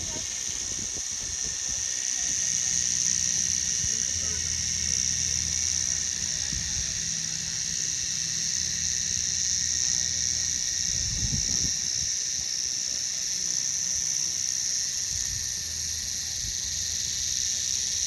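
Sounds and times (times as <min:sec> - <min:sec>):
low hum: 0:00.0 - 0:12.1
cicadas droning: 0:00.0 - 0:18.0.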